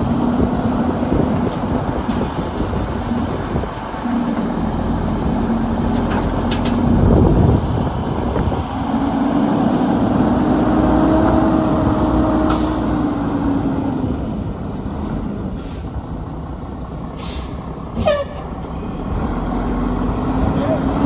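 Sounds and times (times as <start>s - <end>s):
truck diesel engine running: 0.0s - 21.0s
air hissing: 12.5s - 13.1s.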